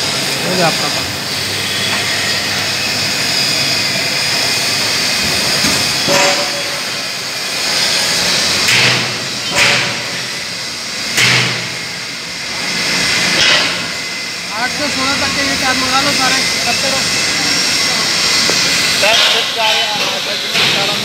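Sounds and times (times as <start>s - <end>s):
drill motor whining: 0.0s - 19.0s
sharp metallic knocks: 5.2s - 7.1s, 8.5s - 10.4s, 11.1s - 11.8s, 13.2s - 14.0s, 19.0s - 21.0s.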